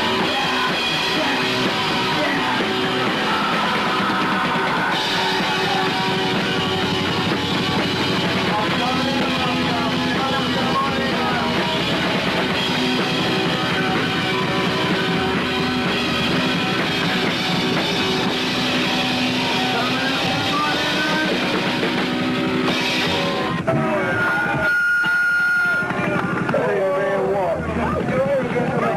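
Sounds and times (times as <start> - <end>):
person singing: 0.0 - 15.4, 18.2 - 22.0
drum kit beat: 0.0 - 27.3
distorted electric guitars: 0.0 - 28.9.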